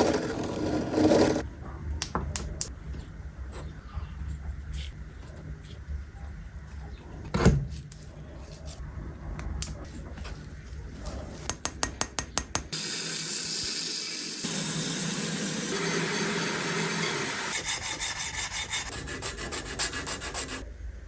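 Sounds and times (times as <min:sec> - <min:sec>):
filing or sanding blade: 0:14.4 - 0:20.6.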